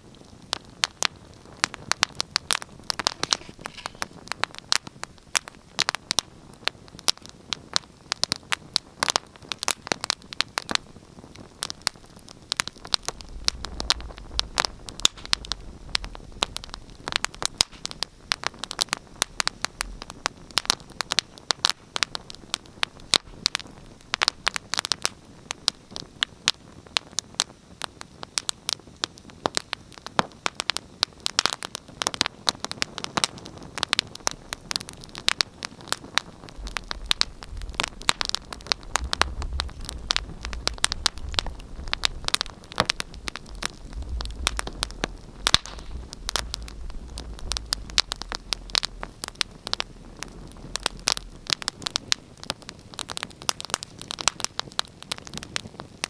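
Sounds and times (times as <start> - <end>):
wood fire crackling and popping: 0.0 - 56.0
low rumble: 12.8 - 18.7, 36.4 - 52.0.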